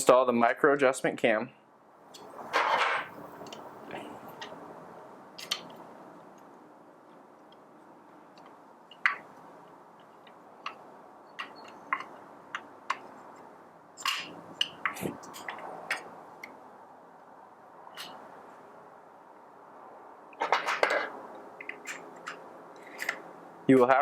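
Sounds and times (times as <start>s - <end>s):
small parts clicking and tapping: 5.3s - 6.5s, 8.3s - 16.6s, 20.3s - 23.3s.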